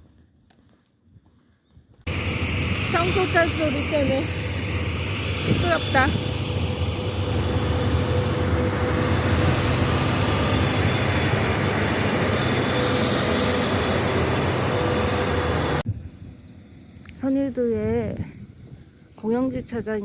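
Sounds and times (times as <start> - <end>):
street sweeper running: 2.1 - 15.8.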